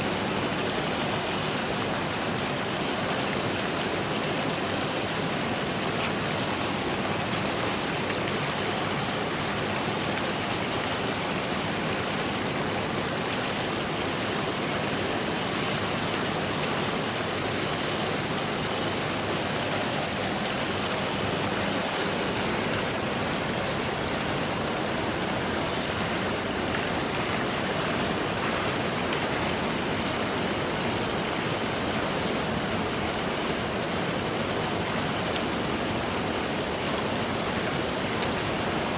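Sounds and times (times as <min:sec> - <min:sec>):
flowing water rushing: 0:00.0 - 0:38.9.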